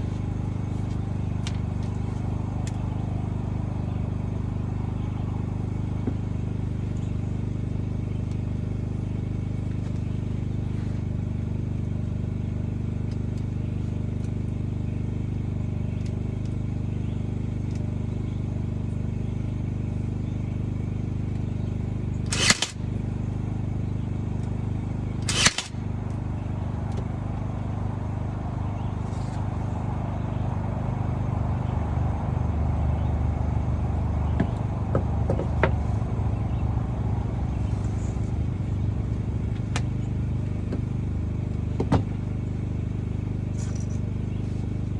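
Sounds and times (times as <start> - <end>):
low machine hum: 0.0 - 44.9
nail gun firing: 22.3 - 22.8, 25.2 - 25.8.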